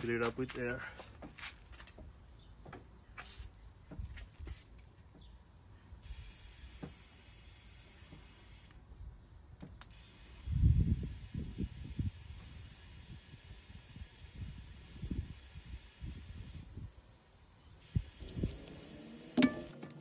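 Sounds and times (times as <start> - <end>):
air hissing into a tire: 3.2 - 3.6, 4.4 - 4.8, 5.7 - 8.8, 9.9 - 19.7.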